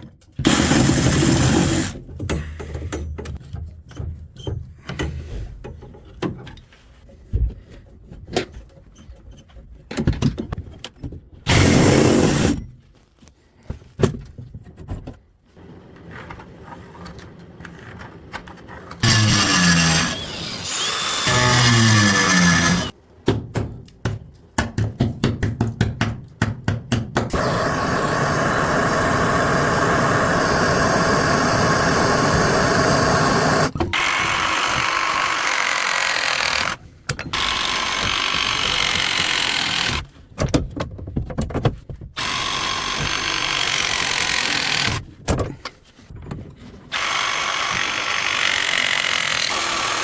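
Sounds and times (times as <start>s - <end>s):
handheld power tool running: 11.5s - 12.6s, 19.0s - 23.0s, 27.3s - 36.8s, 37.4s - 40.1s, 42.2s - 45.0s, 46.9s - 50.0s.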